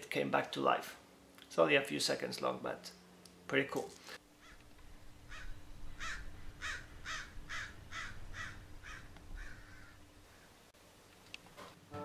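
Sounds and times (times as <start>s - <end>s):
faint steady hum: 0.0s - 12.0s
crow cawing: 4.4s - 4.7s, 5.3s - 10.6s.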